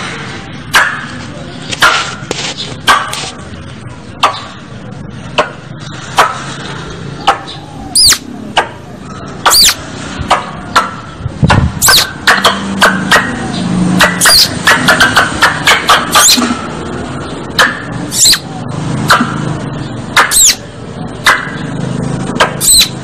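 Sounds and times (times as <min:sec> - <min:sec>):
squirrel chip calls: 0:07.2 - 0:08.3, 0:09.4 - 0:09.8, 0:11.8 - 0:12.2, 0:14.0 - 0:15.0, 0:15.9 - 0:16.5, 0:18.0 - 0:18.5, 0:20.1 - 0:20.6, 0:22.4 - 0:23.0.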